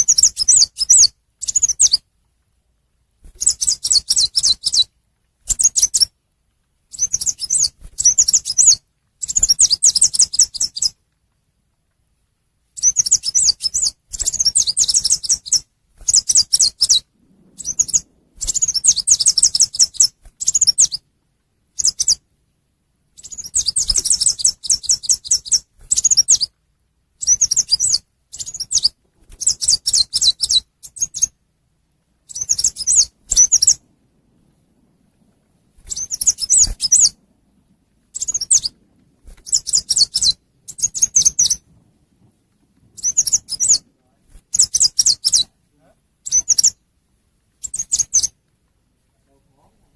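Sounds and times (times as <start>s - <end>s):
bird twittering trills: 0.0s - 2.0s, 3.4s - 4.9s, 5.5s - 6.1s, 6.9s - 11.0s, 12.8s - 21.1s, 21.7s - 22.2s, 23.1s - 26.6s, 27.2s - 31.4s, 32.2s - 41.8s, 42.8s - 43.9s, 44.5s - 45.6s, 46.2s - 46.8s, 47.6s - 48.4s.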